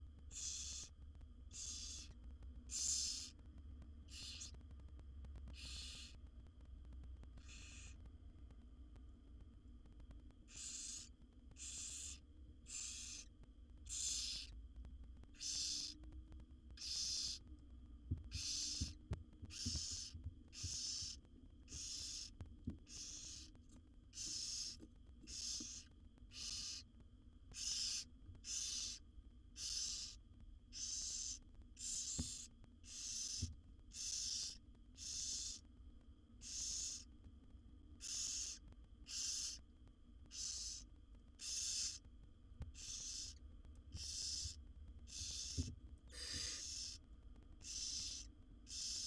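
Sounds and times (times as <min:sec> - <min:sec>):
low steady hum: 0:00.0 - 0:49.0
owl nestlings hissing begging calls: 0:00.3 - 0:03.4, 0:04.1 - 0:04.6, 0:05.6 - 0:06.2, 0:07.4 - 0:08.0, 0:10.5 - 0:14.5, 0:15.4 - 0:16.0, 0:16.8 - 0:17.4, 0:18.3 - 0:26.9, 0:27.5 - 0:29.0, 0:29.6 - 0:35.6, 0:36.4 - 0:37.1, 0:38.0 - 0:39.6, 0:40.3 - 0:42.0, 0:42.7 - 0:43.4, 0:44.0 - 0:47.0, 0:47.6 - 0:49.0.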